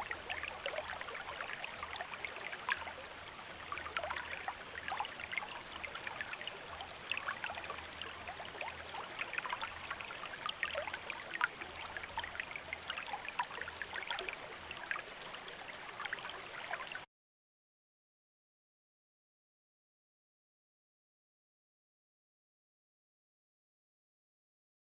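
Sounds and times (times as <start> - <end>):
water trickling and splashing: 0.0 - 17.0.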